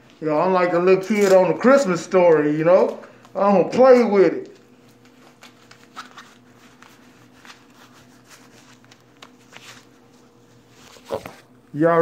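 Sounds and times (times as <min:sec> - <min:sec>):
clothing rustling: 0:04.7 - 0:11.5.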